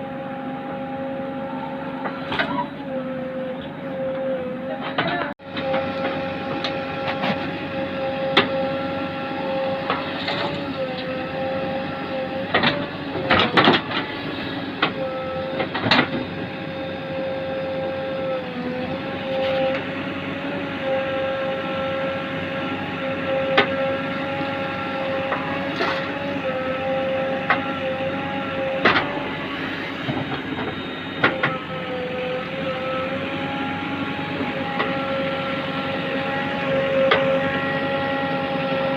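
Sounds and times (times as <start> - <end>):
diesel engine whining under load: 0.0 - 38.9.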